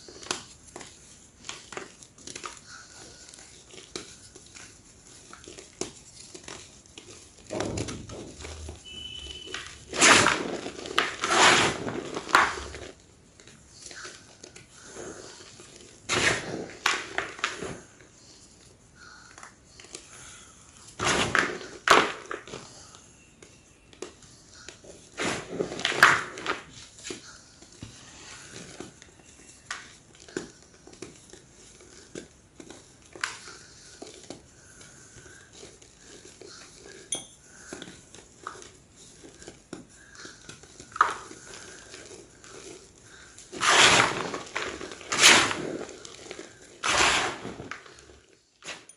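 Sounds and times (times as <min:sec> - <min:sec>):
chalk crunching: 0:37.9 - 0:48.1.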